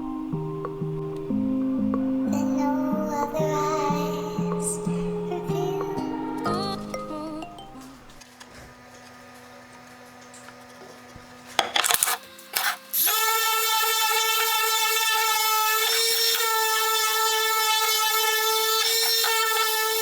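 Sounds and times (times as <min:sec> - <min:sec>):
power tool high-pitched whine: 0:09.1 - 0:20.0.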